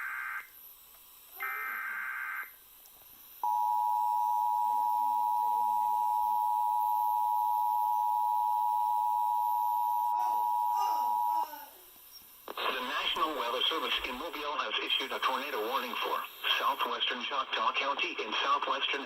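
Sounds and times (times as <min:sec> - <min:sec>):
two-tone attention signal: 0:03.4 - 0:11.4.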